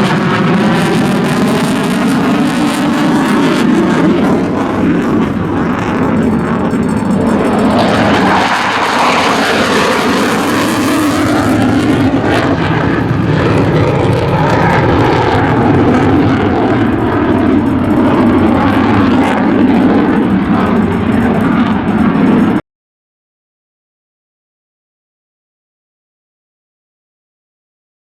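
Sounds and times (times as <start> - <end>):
jet engines roaring: 0.0 - 22.6.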